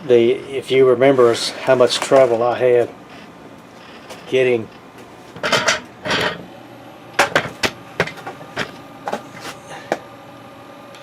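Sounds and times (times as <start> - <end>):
handling scuffs: 9.1 - 10.0.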